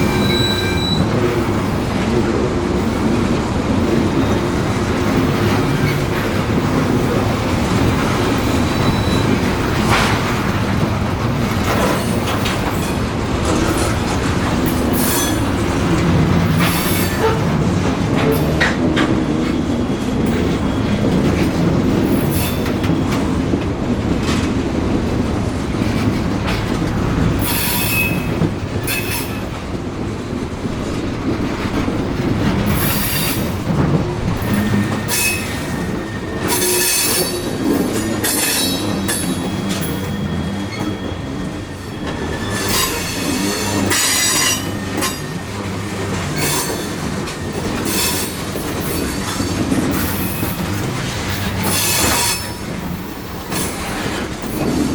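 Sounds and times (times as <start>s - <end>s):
high-pitched wheel squeal: 0.0s - 1.2s, 8.4s - 9.5s, 27.4s - 29.4s, 32.6s - 45.6s
train wheels rumbling on track: 0.0s - 54.9s.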